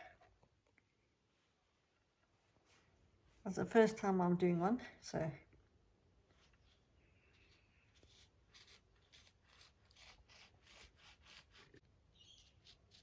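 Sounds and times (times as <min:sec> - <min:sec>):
knife sawing through peel: 0:08.0 - 0:11.8.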